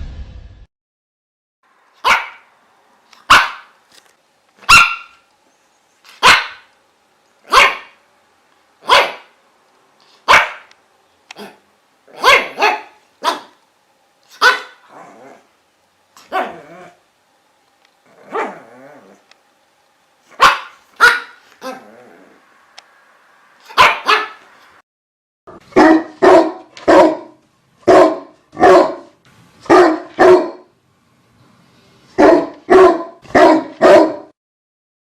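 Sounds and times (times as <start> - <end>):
dog barking: 2.0 - 2.5, 3.2 - 3.8, 4.6 - 5.2, 6.2 - 6.7, 7.4 - 8.0, 8.8 - 9.4, 10.2 - 10.7, 11.4 - 13.6, 14.3 - 14.9, 16.2 - 16.7, 18.2 - 18.7, 20.3 - 21.8, 23.6 - 24.5, 25.5 - 30.7, 32.2 - 34.4.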